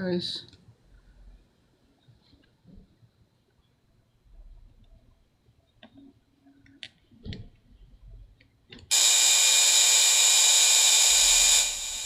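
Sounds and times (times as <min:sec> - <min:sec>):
electric screwdriver whirring: 0:08.9 - 0:12.0.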